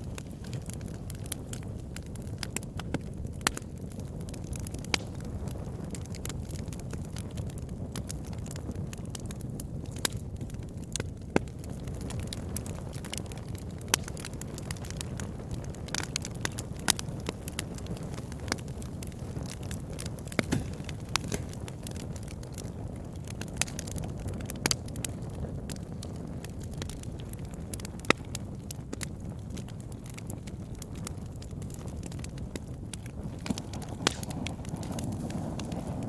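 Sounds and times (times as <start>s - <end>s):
burning wood crackling and popping: 0.0s - 36.0s
low rumble of flames: 0.0s - 36.0s.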